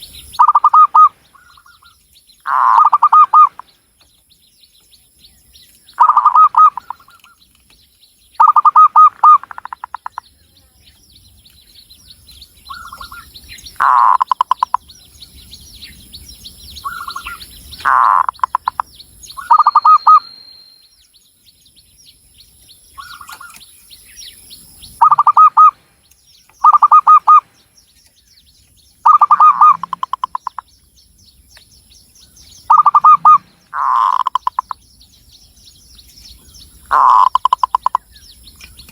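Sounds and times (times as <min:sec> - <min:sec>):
faint high chirping: 0:00.0 - 0:38.9
dove cooing: 0:00.4 - 0:01.7, 0:02.5 - 0:03.6, 0:06.0 - 0:07.2, 0:08.4 - 0:09.9, 0:25.0 - 0:25.8, 0:26.6 - 0:27.4, 0:29.0 - 0:30.6, 0:32.7 - 0:34.8.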